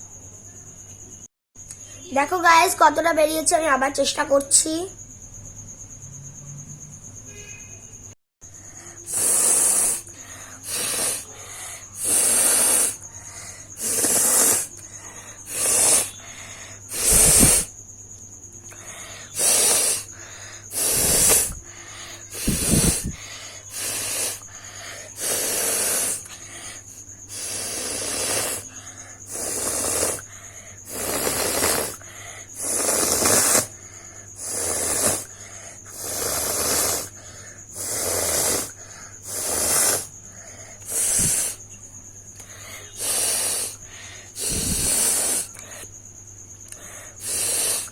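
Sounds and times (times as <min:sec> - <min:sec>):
person blowing nose hard: 0:08.9 - 0:13.0, 0:13.7 - 0:17.7, 0:18.8 - 0:41.6, 0:42.7 - 0:45.8, 0:47.0 - 0:47.9.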